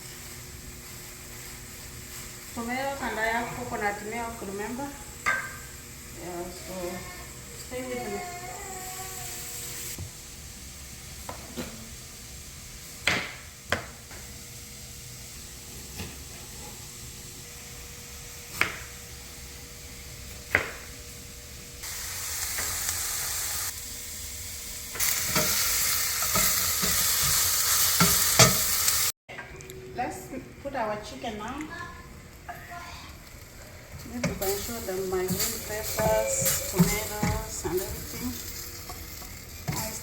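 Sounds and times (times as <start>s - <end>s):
vegetables sizzling in a pan: 0.0s - 29.2s, 31.0s - 40.0s
spoon knocking against pan: 5.2s - 5.6s.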